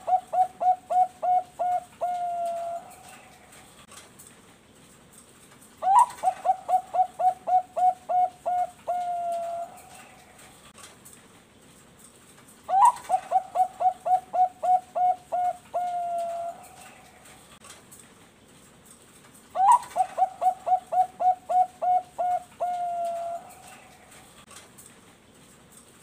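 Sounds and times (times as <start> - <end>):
dove cooing: 0.0 - 3.6, 5.8 - 10.6, 12.7 - 17.5, 19.6 - 24.4.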